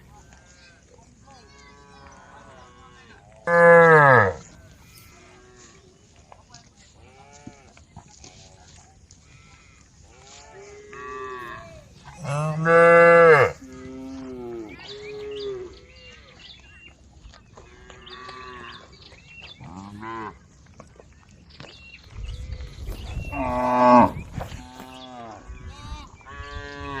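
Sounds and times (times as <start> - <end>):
cows mooing: 3.5 - 4.4, 9.4 - 15.8, 19.6 - 20.4, 23.2 - 27.0.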